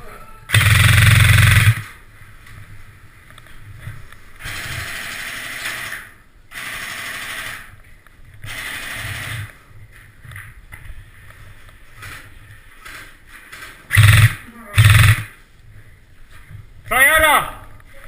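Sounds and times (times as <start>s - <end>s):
airsoft rifle automatic fire: 0.5s - 1.9s, 4.4s - 7.7s, 8.5s - 9.5s, 13.9s - 15.3s.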